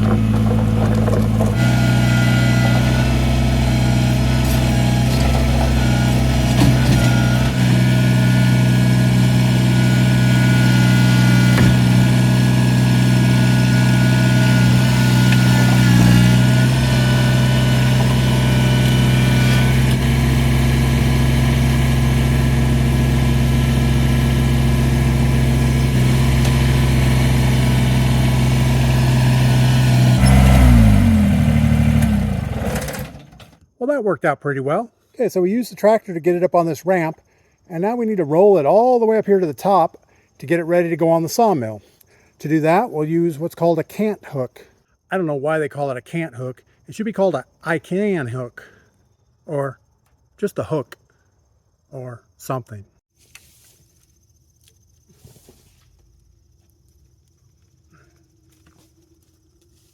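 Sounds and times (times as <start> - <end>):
tractor engine running: 0.0 - 33.6.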